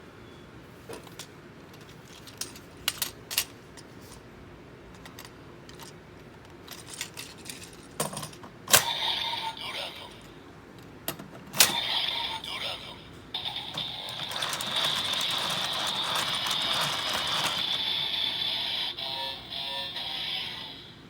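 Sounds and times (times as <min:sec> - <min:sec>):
rustling clatter: 0:00.9 - 0:04.2, 0:04.9 - 0:08.4, 0:13.7 - 0:17.8
plastic toy clicking: 0:13.7 - 0:17.8.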